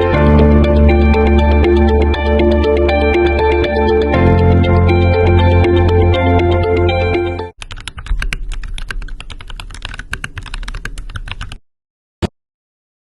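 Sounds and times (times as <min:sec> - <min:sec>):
background music: 0:00.0 - 0:07.6
typing on a keyboard: 0:07.6 - 0:11.6.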